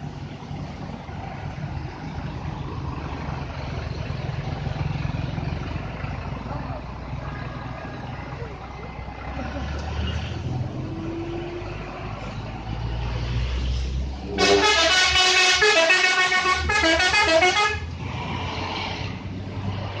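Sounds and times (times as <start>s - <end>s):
bus engine rumbling: 0.0s - 20.0s
multi-tone musical bus horn: 14.3s - 18.0s.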